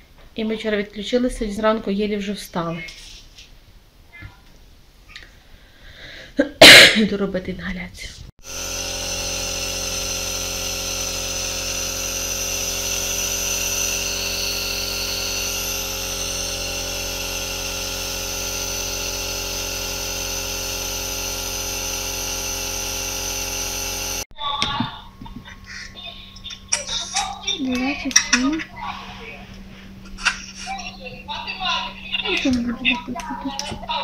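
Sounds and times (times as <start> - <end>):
nebulizer humming: 8.4 - 24.3.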